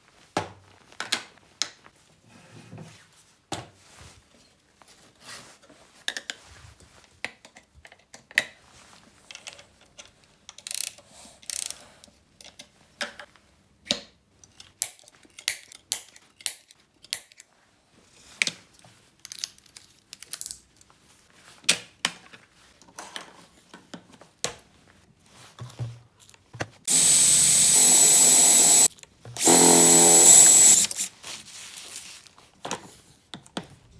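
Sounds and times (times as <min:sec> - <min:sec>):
electric drill whining: 0:26.9 - 0:31.1.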